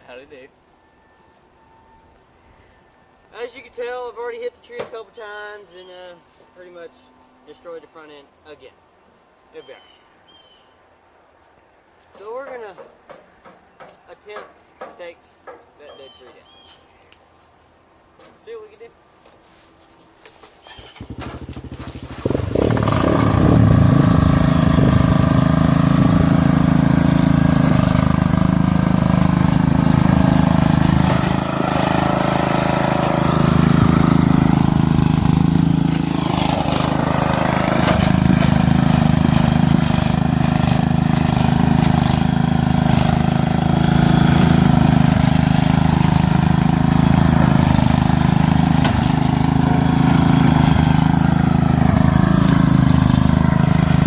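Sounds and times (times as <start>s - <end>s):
lawn mower engine running: 20.6s - 54.0s.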